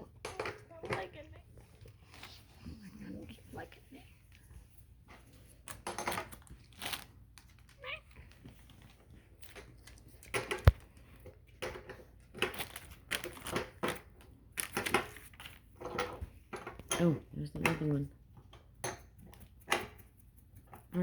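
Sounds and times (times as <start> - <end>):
packaging crinkling: 6.3 - 10.8.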